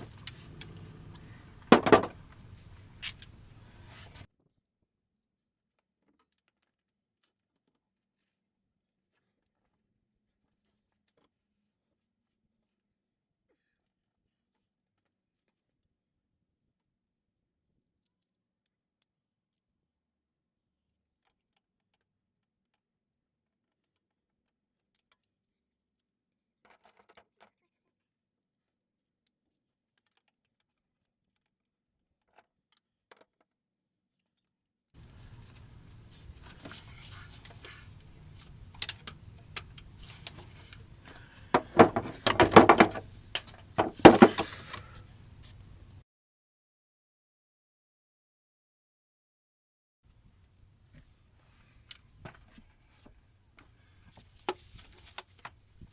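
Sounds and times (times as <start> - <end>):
metal hand tools clinking: 0.0 - 4.2, 35.0 - 45.6.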